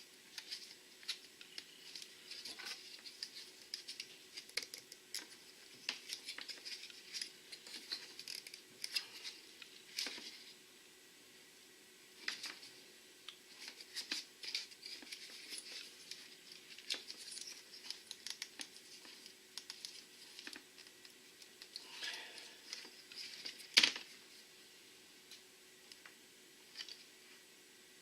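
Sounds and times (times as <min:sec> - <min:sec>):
hands handling plastic parts: 0:00.3 - 0:10.5, 0:13.5 - 0:24.2.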